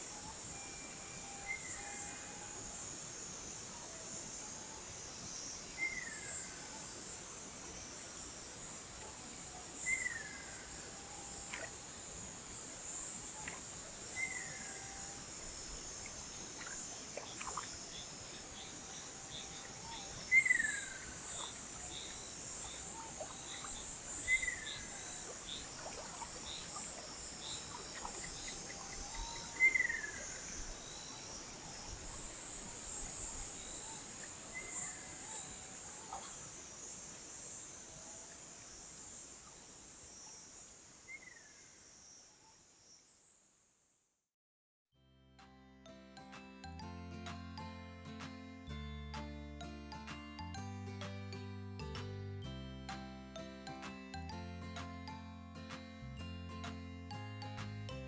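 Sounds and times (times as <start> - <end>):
insects chorus: 0.0 - 43.6
kingfisher calling: 13.3 - 36.6.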